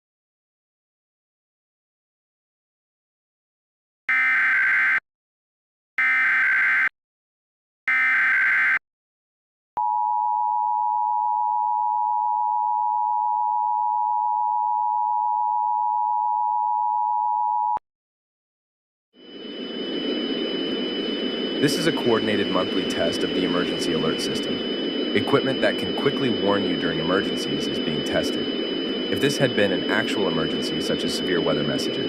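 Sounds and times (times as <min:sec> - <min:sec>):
screechy digital data bursts: 0:20.1 - 0:32.0.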